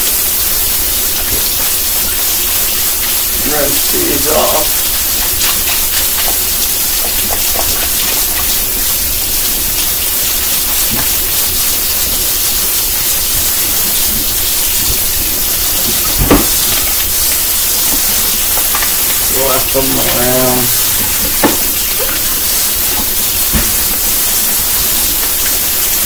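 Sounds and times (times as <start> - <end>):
tap water running: 0.0 - 26.0
thump: 16.2 - 16.6, 21.4 - 21.6, 23.6 - 23.8.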